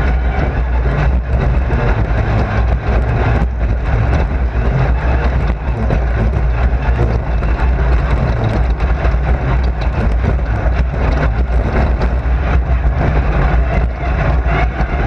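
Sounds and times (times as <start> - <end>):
race car engine drone: 0.0 - 15.0
small clicks and rattles: 0.0 - 15.0.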